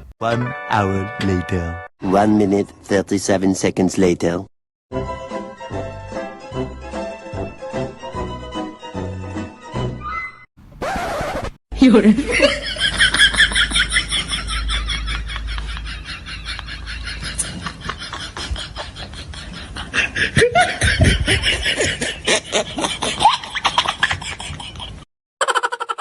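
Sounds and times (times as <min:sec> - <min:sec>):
rapid pulsing laughter: 0:12.4 - 0:26.0.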